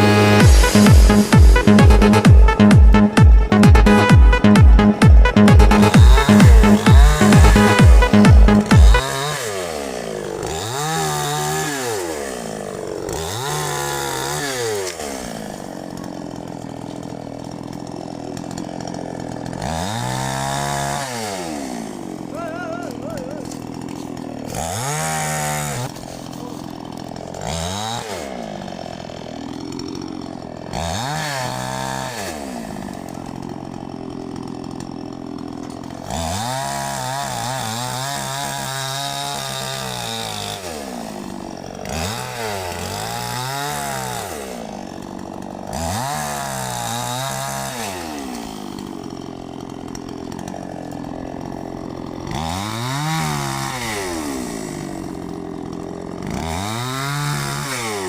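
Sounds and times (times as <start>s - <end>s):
chainsaw revving: 0.0s - 58.0s.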